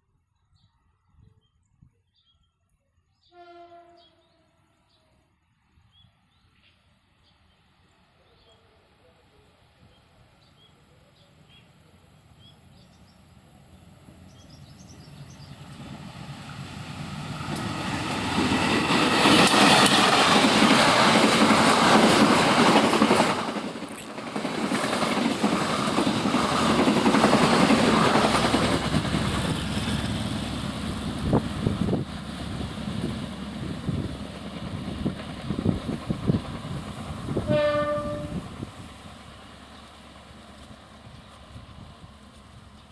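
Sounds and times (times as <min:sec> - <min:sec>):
birds chirping: 0:09.6 - 0:21.3
diesel locomotive rumble: 0:10.8 - 0:42.9
train wheels clickety-clack: 0:17.4 - 0:30.3.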